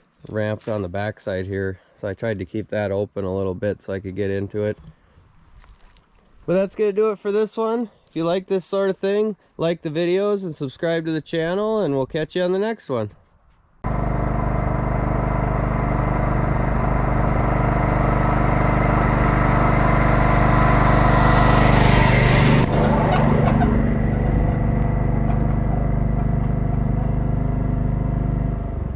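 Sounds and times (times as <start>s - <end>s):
loader engine running: 13.8s - 28.9s.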